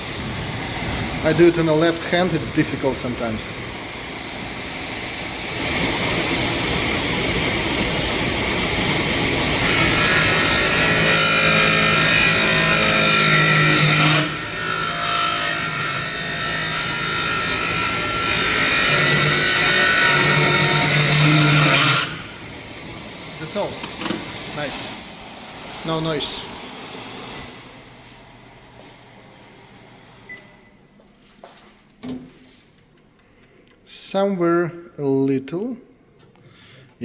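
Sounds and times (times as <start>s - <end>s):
rushing air: 0.0s - 9.6s, 22.2s - 28.2s.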